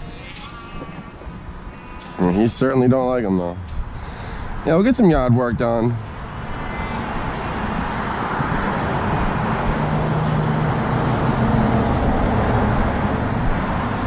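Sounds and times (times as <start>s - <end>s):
vehicle driving past: 6.3s - 14.0s.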